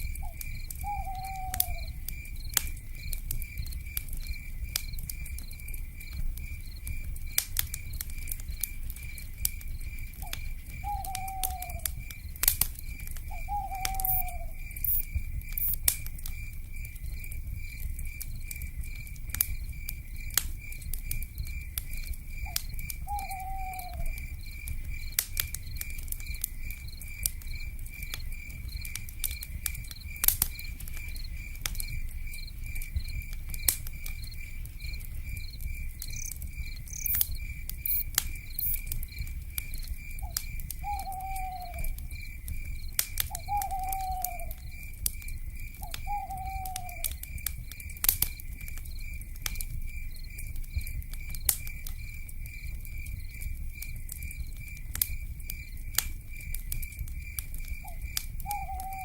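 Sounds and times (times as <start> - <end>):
campfire crackling and popping: 0.0 - 59.0
owl hooting: 0.2 - 1.9, 10.8 - 11.8, 13.3 - 14.6, 23.1 - 24.1, 40.2 - 42.0, 43.3 - 44.5, 45.9 - 47.1, 58.4 - 59.0
pulsing insect trill: 13.3 - 15.8, 34.2 - 39.2.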